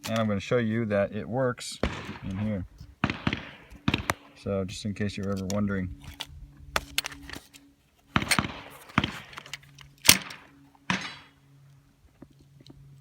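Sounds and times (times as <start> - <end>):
pistol shots: 1.8 - 4.5, 8.2 - 11.4.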